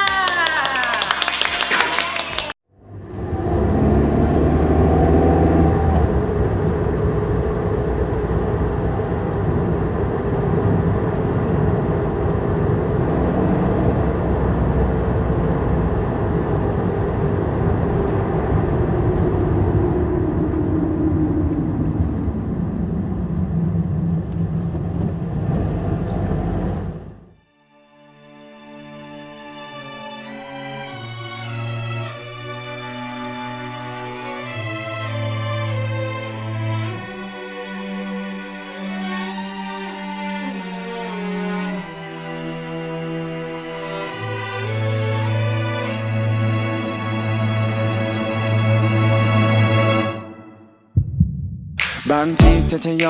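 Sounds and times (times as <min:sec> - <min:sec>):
motor vehicle rumble: 0:02.7 - 0:27.4.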